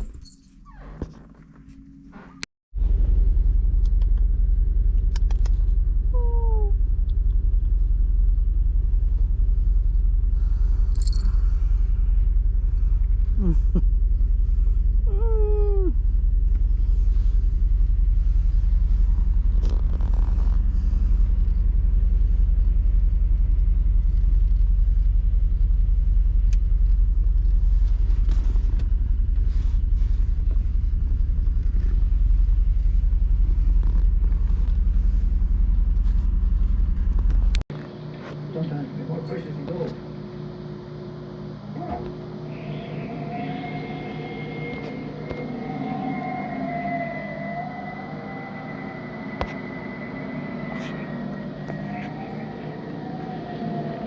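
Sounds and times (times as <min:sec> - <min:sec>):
vehicle road rumble: 0:01.2 - 0:37.7.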